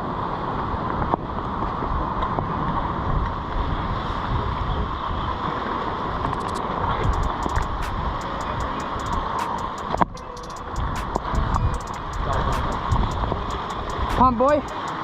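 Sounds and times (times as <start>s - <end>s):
surf washing against rocks: 0.0s - 10.1s, 10.7s - 15.0s
wind buffeting the microphone: 0.0s - 14.7s
sharp clicks: 6.3s - 15.0s.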